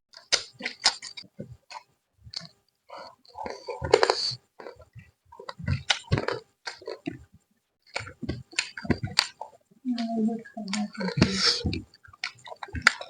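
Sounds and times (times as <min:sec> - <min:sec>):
chewing and lip-smacking: 0:00.2 - 0:13.0
person humming: 0:09.8 - 0:11.9.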